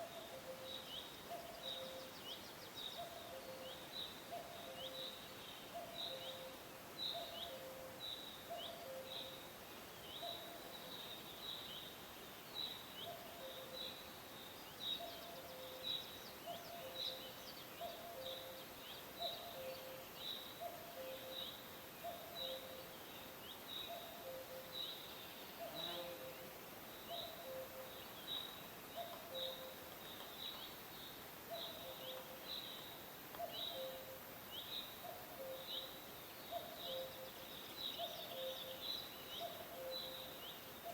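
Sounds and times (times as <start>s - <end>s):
forest ambience hiss: 0.0s - 40.9s
cuckoo calling: 5.8s - 9.4s, 19.2s - 22.8s, 23.8s - 24.8s, 27.1s - 28.1s, 28.9s - 30.3s, 31.5s - 34.2s, 35.0s - 38.8s, 39.4s - 40.9s.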